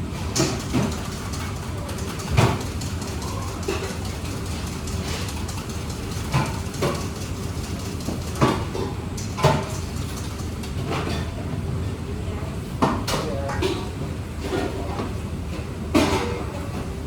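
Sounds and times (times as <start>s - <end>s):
utensils clattering on counter: 0.4s - 11.3s.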